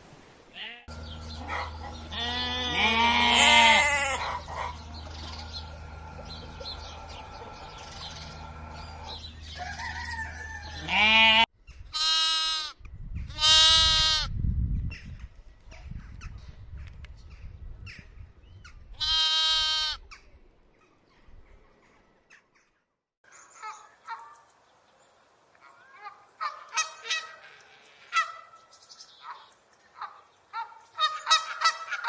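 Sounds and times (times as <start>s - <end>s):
steady low hum: 0.9s - 9.6s
sheep bleating: 1.9s - 4.5s, 10.8s - 12.8s, 13.4s - 14.3s, 19.0s - 20.0s.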